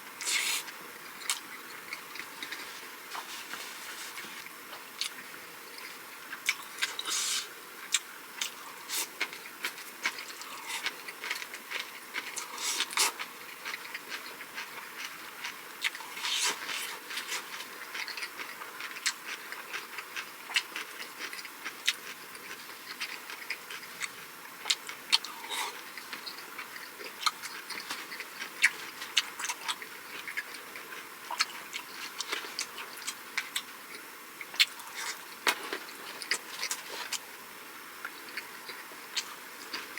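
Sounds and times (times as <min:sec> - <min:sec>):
faint steady hiss: 0:00.0 - 0:39.9
person chewing and smacking: 0:07.9 - 0:37.2.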